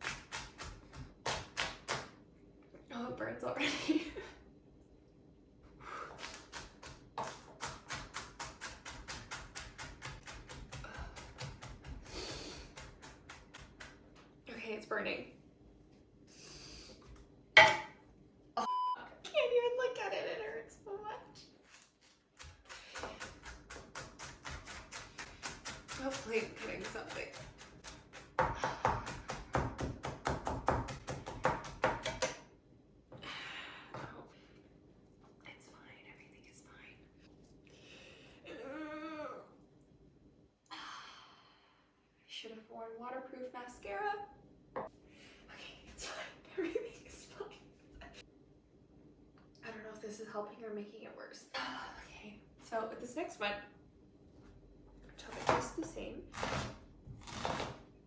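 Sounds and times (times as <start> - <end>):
knife chopping on cutting board: 22.4 - 32.4.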